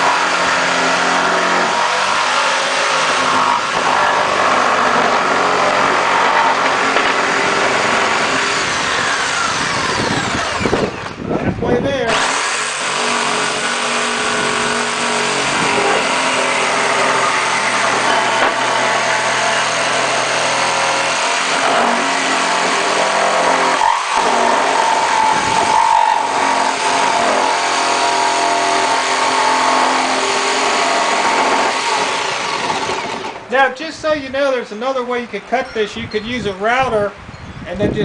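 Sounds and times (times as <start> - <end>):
jigsaw cutting wood: 0.0 - 11.2, 12.0 - 33.5.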